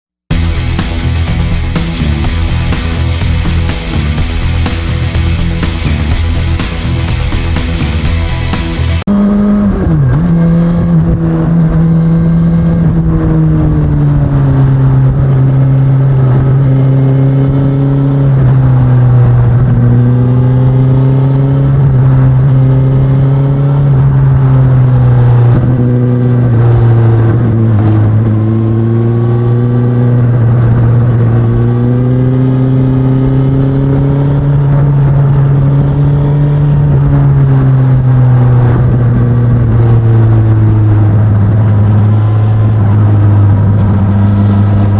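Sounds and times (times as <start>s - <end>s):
motorcycle engine running: 0.3s - 9.6s.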